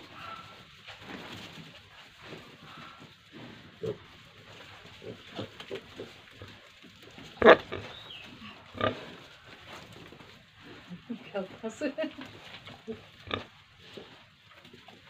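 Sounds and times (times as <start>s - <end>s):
pigs grunting: 2.6s - 4.2s, 5.0s - 6.6s, 7.3s - 9.3s, 12.8s - 14.1s.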